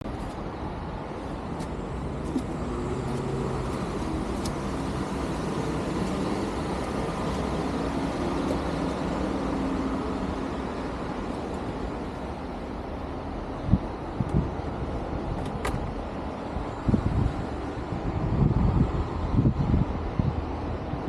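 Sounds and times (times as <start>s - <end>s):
vehicle engine humming: 0.0s - 20.9s
road traffic rumble: 0.0s - 21.0s.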